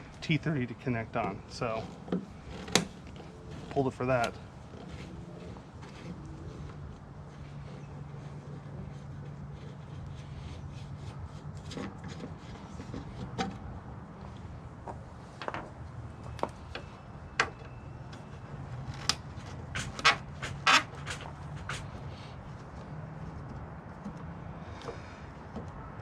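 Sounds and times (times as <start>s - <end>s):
steady low hum: 0.0s - 17.4s.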